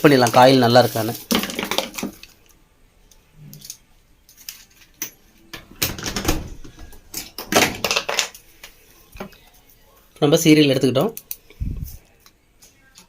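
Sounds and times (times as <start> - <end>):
small hard objects clattering: 0.2 - 2.3, 7.2 - 8.4.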